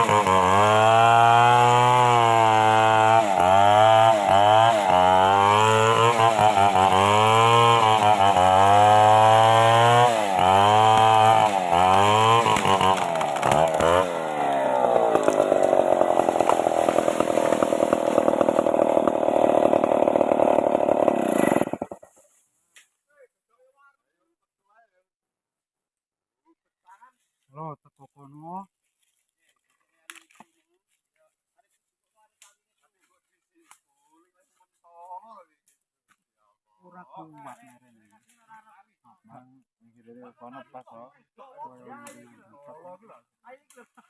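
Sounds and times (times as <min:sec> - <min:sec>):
chainsaw cutting a tree: 0:00.0 - 0:22.3.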